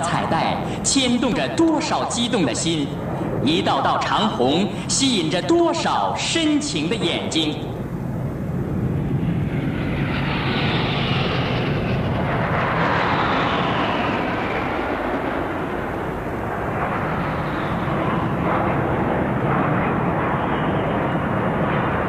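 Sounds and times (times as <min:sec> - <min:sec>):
jet aircraft flying over: 0:00.0 - 0:22.0.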